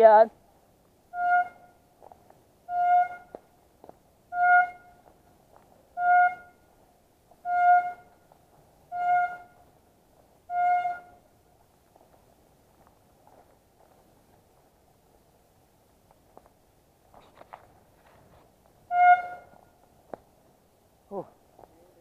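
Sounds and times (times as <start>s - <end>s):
signal horn blasts: 1.1s - 1.8s, 2.7s - 3.3s, 4.3s - 5.0s, 6.0s - 6.6s, 7.4s - 8.2s, 8.9s - 9.6s, 10.5s - 11.2s, 18.9s - 19.6s.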